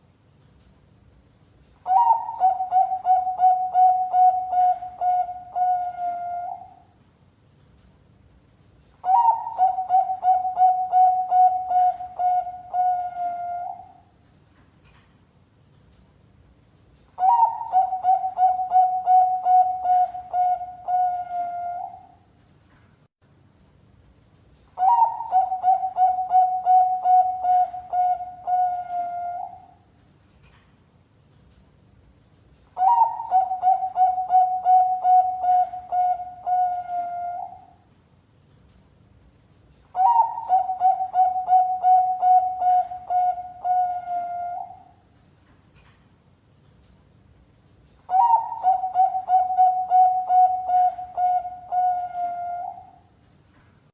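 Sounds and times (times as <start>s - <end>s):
dove cooing: 1.8s - 6.9s, 9.0s - 14.0s, 17.2s - 22.2s, 24.8s - 29.8s, 32.8s - 37.8s, 39.9s - 45.0s, 48.1s - 53.0s.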